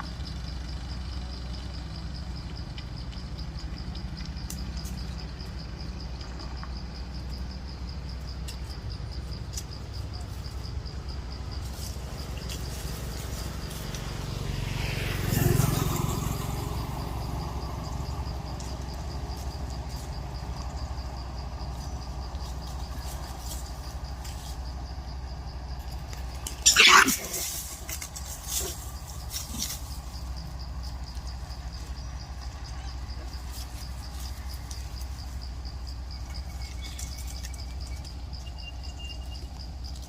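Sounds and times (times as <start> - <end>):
low steady rumble: 0.0 - 15.1, 16.0 - 40.0
insect chirping: 0.0 - 40.0
motor vehicle passing: 10.5 - 40.0.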